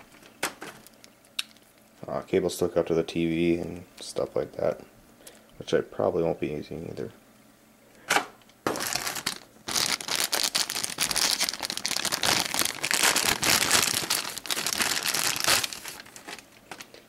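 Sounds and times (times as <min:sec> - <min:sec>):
packaging crinkling and rustling: 0:08.6 - 0:17.0.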